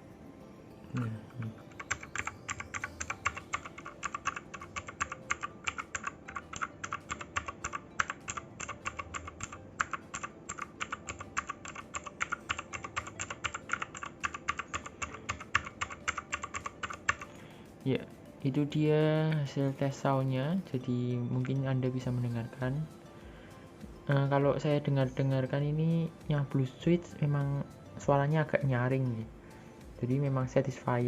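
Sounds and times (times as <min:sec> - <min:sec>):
fast mechanical keyboard typing: 0:01.0 - 0:17.3.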